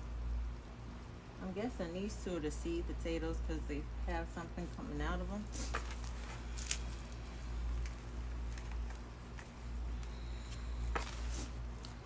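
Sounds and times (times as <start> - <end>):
steady low rumble: 0.0 - 12.0
hands sifting dry soil: 8.4 - 11.6.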